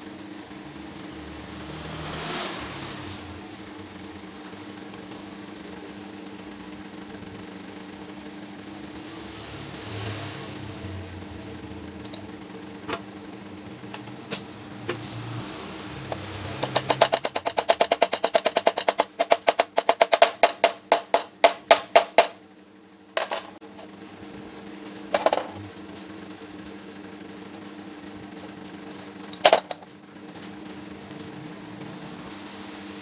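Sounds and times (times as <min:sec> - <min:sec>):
air impact wrench hammering: 0:16.1 - 0:22.4, 0:23.2 - 0:23.6, 0:29.3 - 0:29.8.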